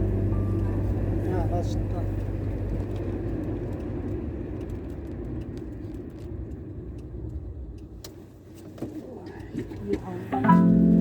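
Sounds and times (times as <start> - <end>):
low noisy rumble: 0.0 - 11.0
faint scattered clicks: 2.0 - 10.3.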